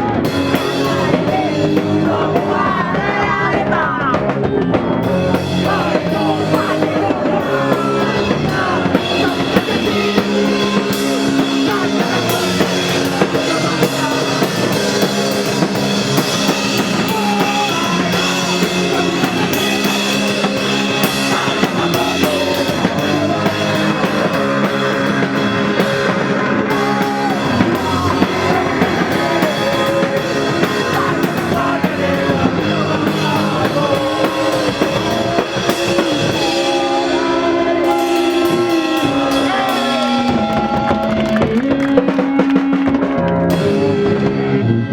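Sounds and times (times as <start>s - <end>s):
drum kit playing: 0.0s - 44.9s
rock music: 0.0s - 44.9s.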